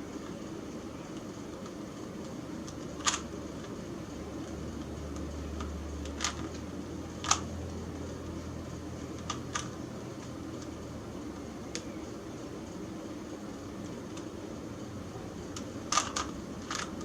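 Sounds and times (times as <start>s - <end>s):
puzzle cube plastic clicks: 2.6s - 3.8s, 5.2s - 6.6s, 7.2s - 7.4s, 9.1s - 9.8s, 15.5s - 17.0s.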